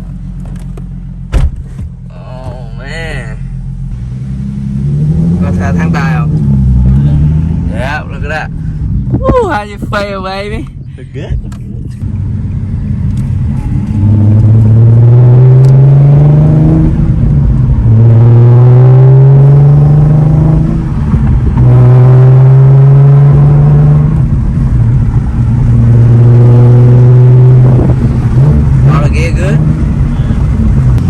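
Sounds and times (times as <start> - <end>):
car engine accelerating through gears: 1.6 - 9.2, 11.3 - 31.0.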